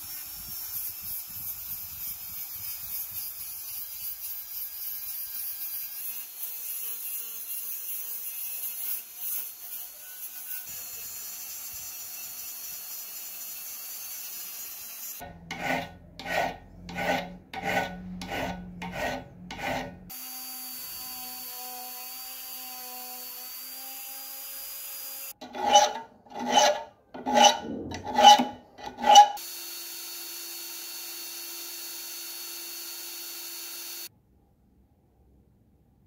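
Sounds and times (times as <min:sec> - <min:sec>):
file rasping on metal key: 0:00.1 - 0:10.8, 0:15.2 - 0:20.1, 0:25.4 - 0:29.4.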